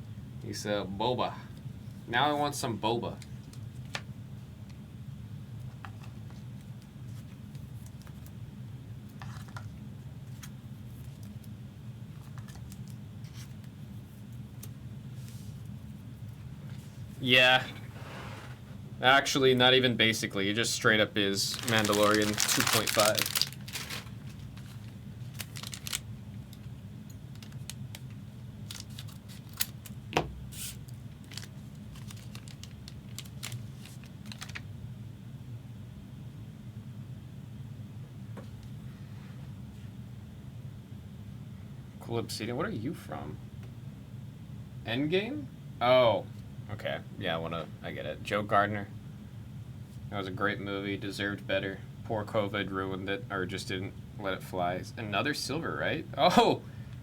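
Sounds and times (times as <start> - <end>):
steady low hum: 0.0 - 57.0
cards sliding on cards: 16.7 - 18.8.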